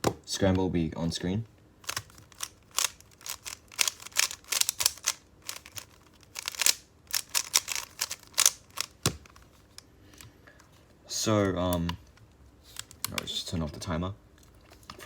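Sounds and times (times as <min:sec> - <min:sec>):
puzzle cube clacking: 0:01.8 - 0:09.5.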